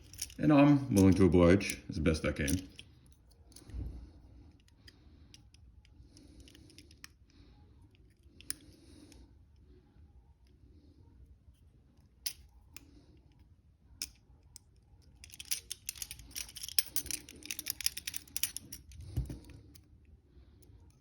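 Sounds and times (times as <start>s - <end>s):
metallic clicks and scraping of lock: 0.0s - 1.8s, 14.0s - 19.9s.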